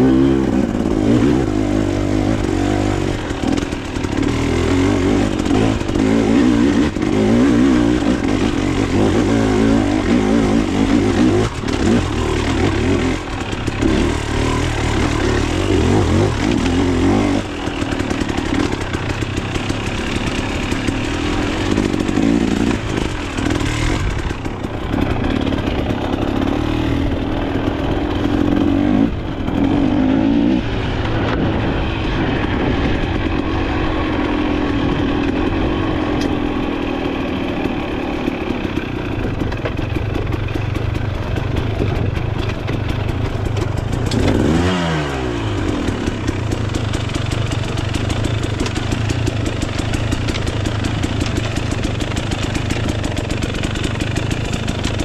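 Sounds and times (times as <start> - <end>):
dirt bike engine revving: 0.0 - 55.0.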